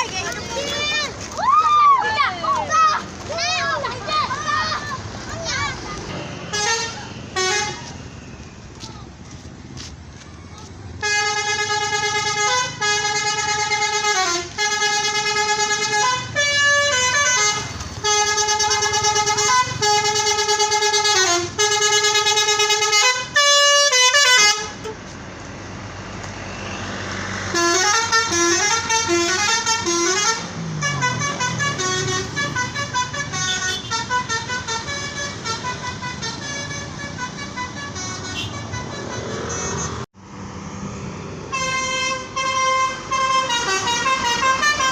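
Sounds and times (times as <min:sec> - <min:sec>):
street noise: 0:00.0 - 0:44.9
multi-tone bus horns playing tunes: 0:06.3 - 0:08.2, 0:11.0 - 0:25.2, 0:27.4 - 0:40.1, 0:41.5 - 0:44.9.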